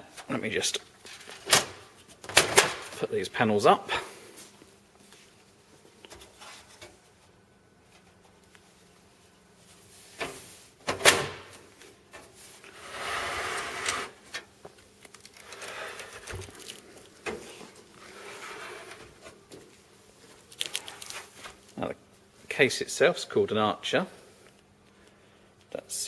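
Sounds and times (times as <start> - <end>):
scraping and sliding handling noise: 11.8 - 21.8.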